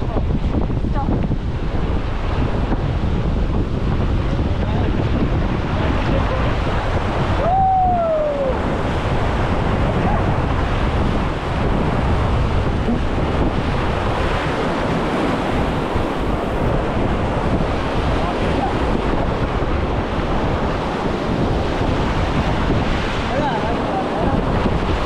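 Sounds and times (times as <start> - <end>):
wind buffeting microphone: 0.0 - 25.0
river water rushing: 5.8 - 25.0.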